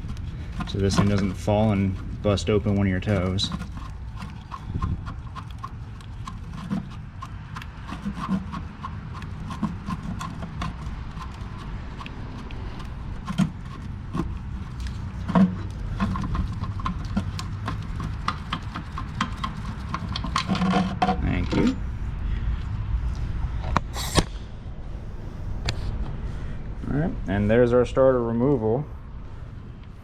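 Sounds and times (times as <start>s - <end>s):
metallic clicks and knocks: 0.0s - 21.8s.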